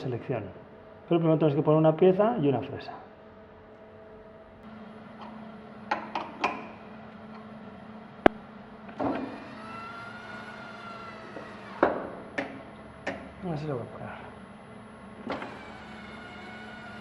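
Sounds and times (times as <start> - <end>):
milling machine humming: 4.6 - 17.0.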